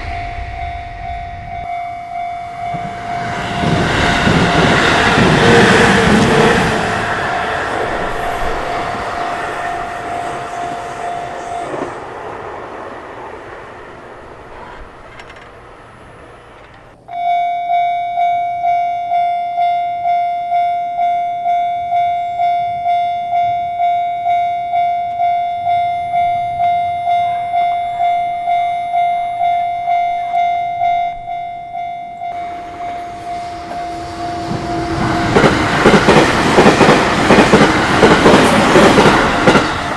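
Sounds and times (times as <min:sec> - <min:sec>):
train passing: 0:00.0 - 0:17.1, 0:21.5 - 0:39.9
level crossing bell ringing: 0:01.5 - 0:05.2, 0:07.1 - 0:12.0, 0:17.1 - 0:36.0.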